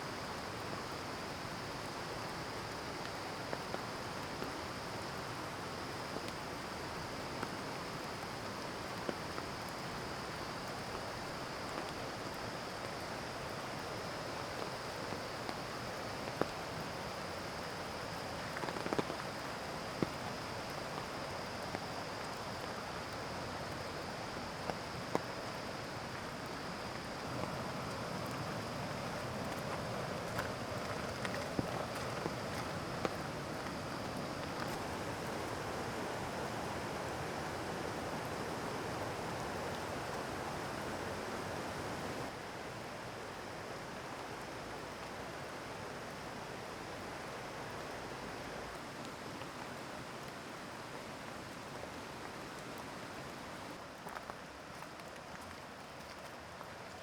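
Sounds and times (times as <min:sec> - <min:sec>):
rain falling with drips: 0:00.0 - 0:57.0
stream rushing: 0:24.2 - 0:44.2.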